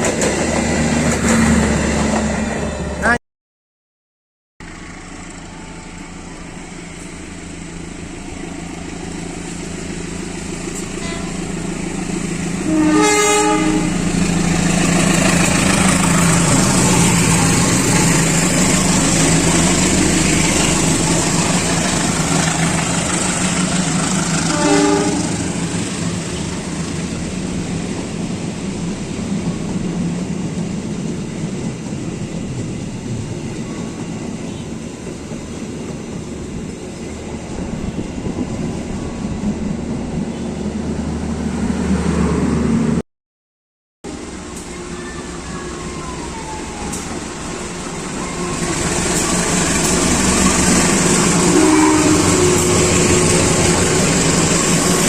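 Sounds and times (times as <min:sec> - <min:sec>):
train rumbling on rails: 0:00.0 - 0:03.2, 0:04.6 - 0:43.0, 0:44.0 - 0:55.0
train horn blast: 0:11.0 - 0:11.6, 0:12.6 - 0:14.1, 0:24.4 - 0:25.6, 0:51.1 - 0:53.6.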